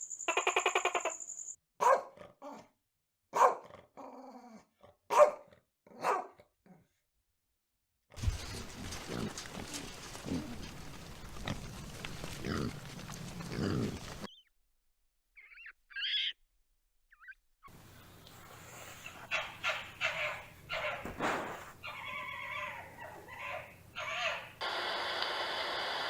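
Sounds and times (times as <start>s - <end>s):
loud repeated animal calls: 0.2s - 1.3s, 19.1s - 24.6s
animal grunting: 8.2s - 14.3s.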